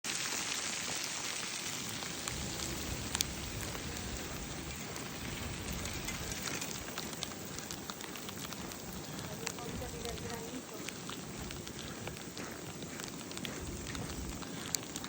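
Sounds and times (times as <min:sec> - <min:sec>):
snow pattering on surfaces: 0:00.0 - 0:15.0
low rumble: 0:01.9 - 0:10.2.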